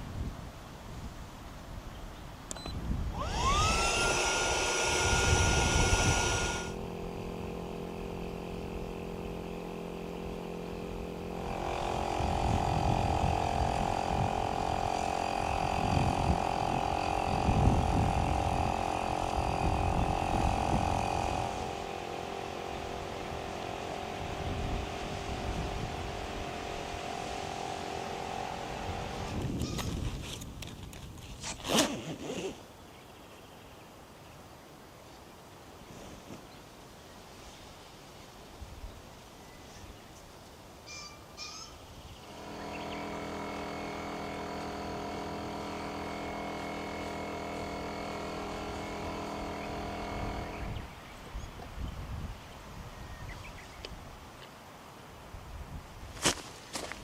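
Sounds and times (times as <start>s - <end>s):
electric air pump whining: 2.5s - 32.6s, 42.2s - 51.5s.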